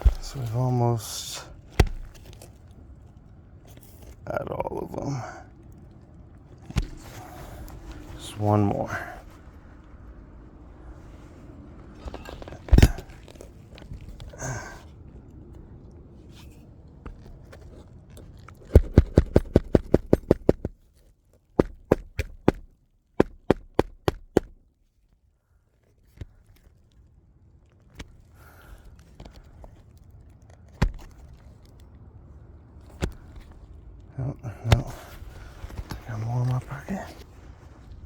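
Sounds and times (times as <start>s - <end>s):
hammer driving nails into shingle: 1.7s - 2.4s, 12.2s - 13.4s, 18.7s - 20.7s, 21.6s - 24.6s.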